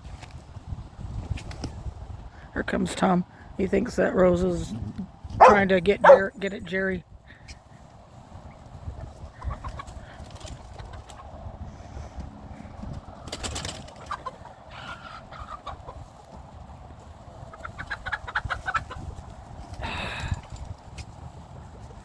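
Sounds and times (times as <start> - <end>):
chickens clucking: 5.4 - 6.3, 9.0 - 11.5, 13.6 - 19.4
harsh squawk: 5.4 - 6.3.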